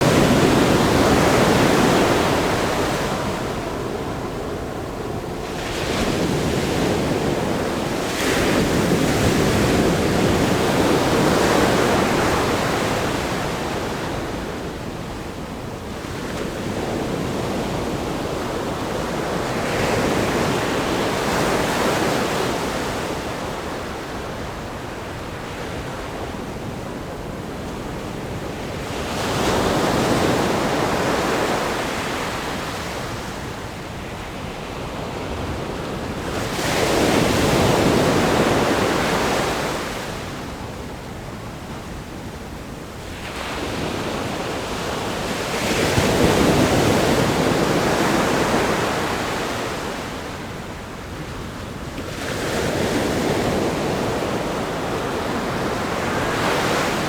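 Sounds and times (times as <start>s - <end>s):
ocean surf breaking on rocks: 0.0s - 14.0s.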